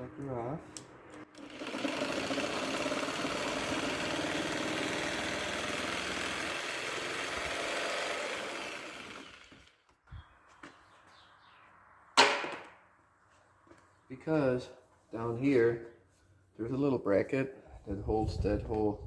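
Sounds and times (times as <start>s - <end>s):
angle grinder cutting bumper: 1.2s - 9.8s.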